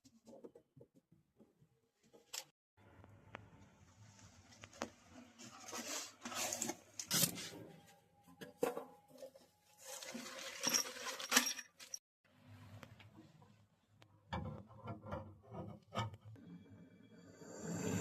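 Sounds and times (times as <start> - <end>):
rustling scraping noise: 4.2 - 7.8, 9.2 - 12.0
metal tools clinking: 10.4 - 12.0.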